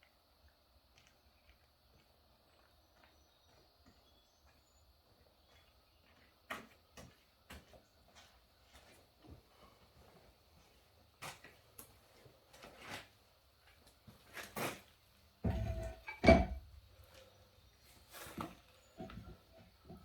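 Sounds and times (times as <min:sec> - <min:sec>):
knocks and clunks of handling: 0:15.4 - 0:16.7, 0:18.3 - 0:20.0.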